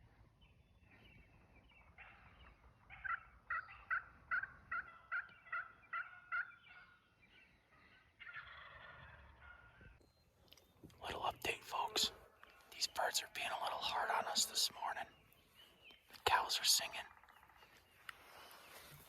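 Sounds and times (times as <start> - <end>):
turkey yelping: 2.9 - 7.0, 8.2 - 9.9.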